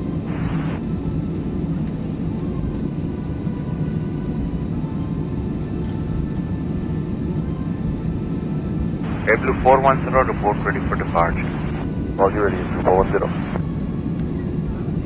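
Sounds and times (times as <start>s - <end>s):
aircraft cabin low rumble: 0.0s - 15.0s
faint high whine: 0.2s - 0.9s, 9.0s - 13.6s.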